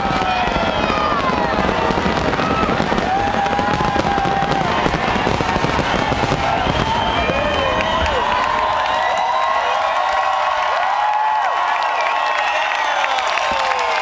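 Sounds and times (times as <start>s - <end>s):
fireworks crackling: 0.0s - 9.0s.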